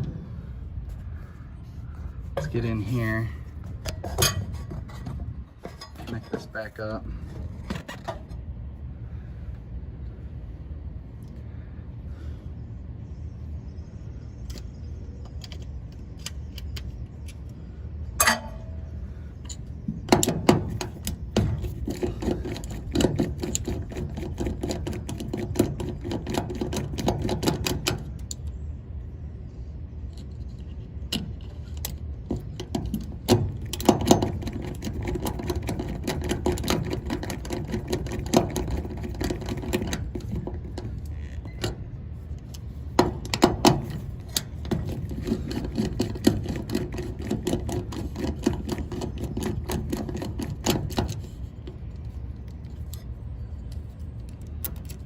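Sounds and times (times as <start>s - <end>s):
steady low hum: 0.0s - 55.0s
hand tools clicking and tapping: 42.4s - 53.0s.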